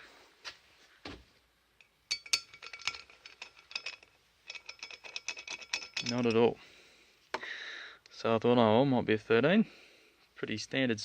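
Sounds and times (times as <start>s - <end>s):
hand tools clinking: 1.8s - 6.6s.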